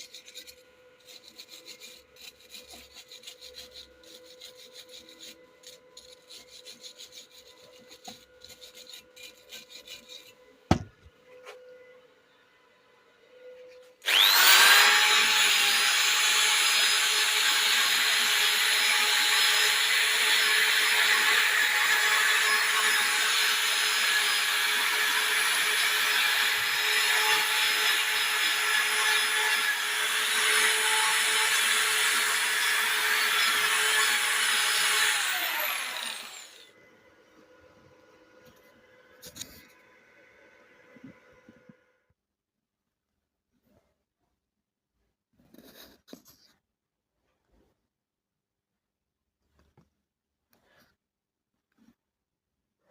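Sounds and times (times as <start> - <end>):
angle grinder whining: 13.3 - 37.6.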